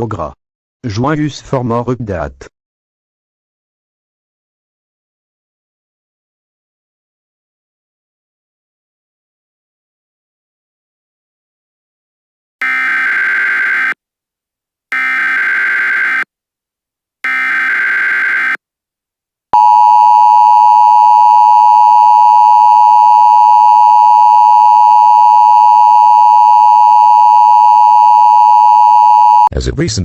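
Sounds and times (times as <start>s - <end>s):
loud steady attention tone: 12.6s - 14.0s, 14.9s - 16.3s, 17.2s - 18.6s, 19.6s - 29.5s.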